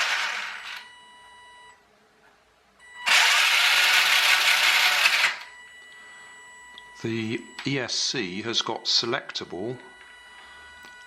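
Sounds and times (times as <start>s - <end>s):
toy car electric motor spinning: 0.0s - 0.8s, 3.1s - 5.4s.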